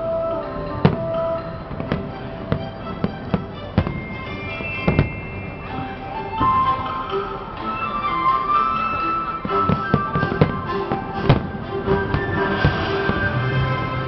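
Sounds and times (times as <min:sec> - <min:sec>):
background music: 0:00.0 - 0:14.0
fireworks bangs: 0:00.5 - 0:06.7, 0:09.4 - 0:14.0.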